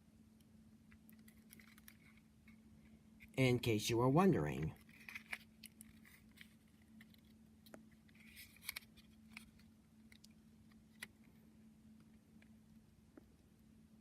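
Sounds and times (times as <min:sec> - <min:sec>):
faint steady hum: 0:00.0 - 0:14.0
packaging rustle: 0:04.8 - 0:10.2.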